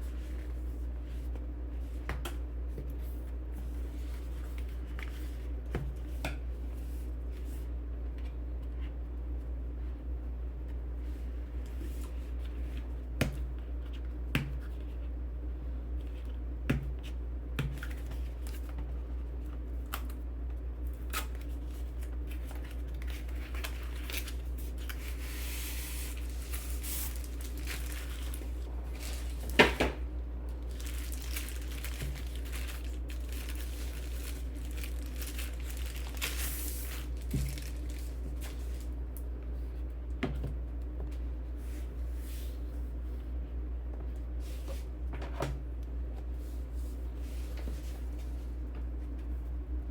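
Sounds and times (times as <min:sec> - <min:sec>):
wrapping crinkling and tearing: 0:20.9 - 0:29.8, 0:30.5 - 0:39.0.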